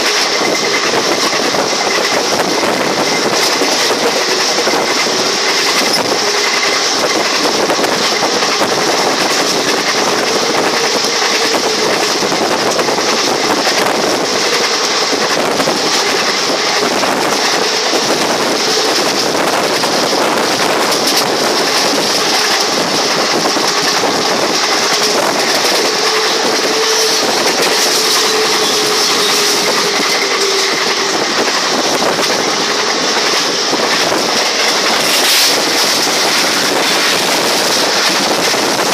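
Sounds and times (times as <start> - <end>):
train rushing noise: 0.0 - 38.9
wheels clicking over rail joints: 0.0 - 38.9.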